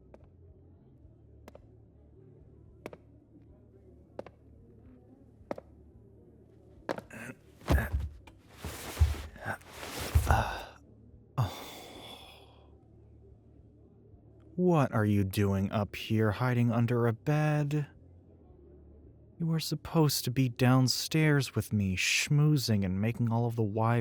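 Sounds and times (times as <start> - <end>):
soft footsteps: 6.9 - 10.7
man sighing and breathing: 7.1 - 10.8, 11.4 - 12.6.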